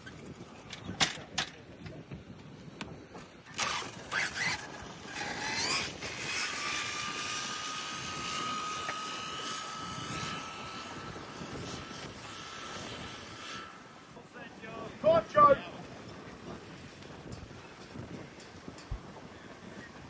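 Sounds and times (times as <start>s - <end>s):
rc car motor whining: 3.5s - 14.0s.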